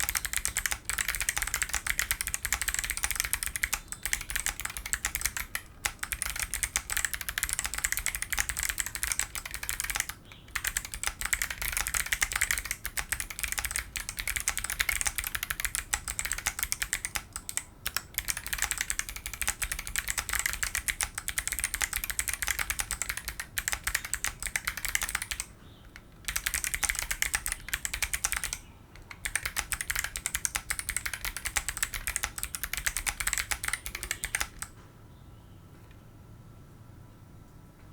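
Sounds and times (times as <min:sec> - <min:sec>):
clicky mechanical keyboard typing: 0:00.0 - 0:34.8.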